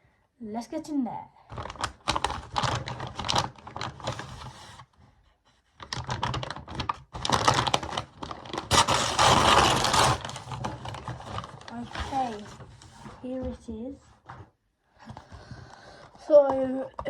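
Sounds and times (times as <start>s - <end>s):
packaging clicks and rustling: 1.5s - 4.8s, 5.8s - 13.3s.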